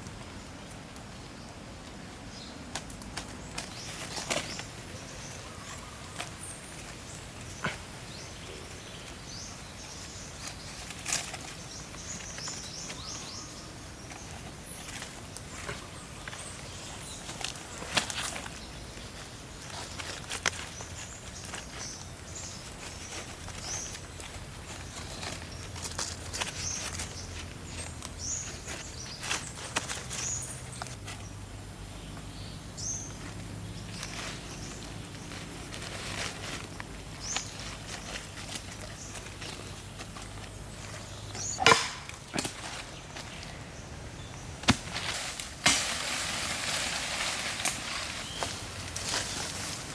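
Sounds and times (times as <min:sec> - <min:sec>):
steady background hiss: 0:00.0 - 0:49.9
bird chirping: 0:36.2 - 0:44.6.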